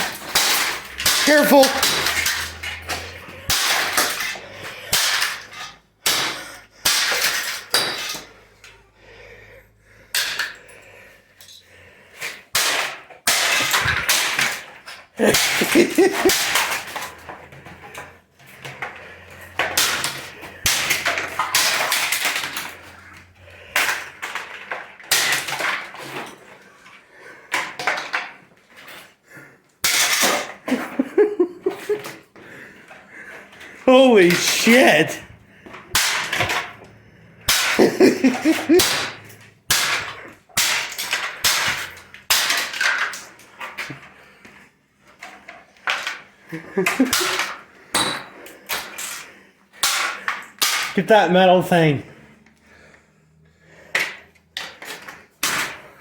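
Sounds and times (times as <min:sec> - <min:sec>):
plastic parts cracking: 0:00.0 - 0:08.4, 0:12.4 - 0:29.2, 0:33.6 - 0:44.1
vacuum cleaner being smashed: 0:00.0 - 0:08.8, 0:10.1 - 0:10.7, 0:12.2 - 0:44.4, 0:45.1 - 0:51.1, 0:53.8 - 0:56.0.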